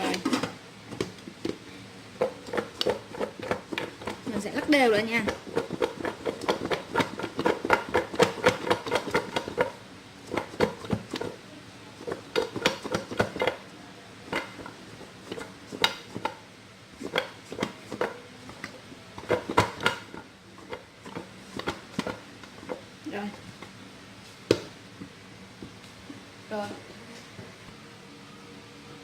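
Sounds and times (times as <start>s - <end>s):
food knocking in shaken pot: 2.2s - 11.4s, 12.0s - 13.6s, 19.2s - 22.8s.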